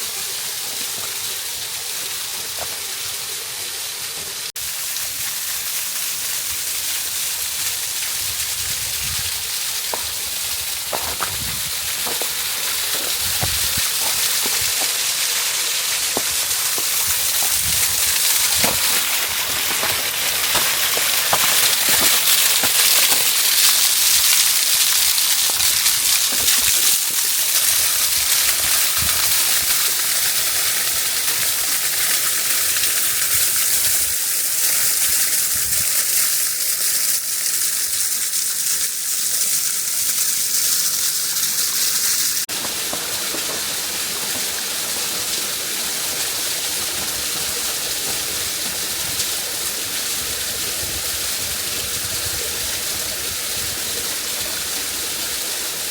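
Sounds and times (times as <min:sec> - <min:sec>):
waterfall rushing: 0:09.5 - 0:33.6, 0:42.2 - 0:55.9.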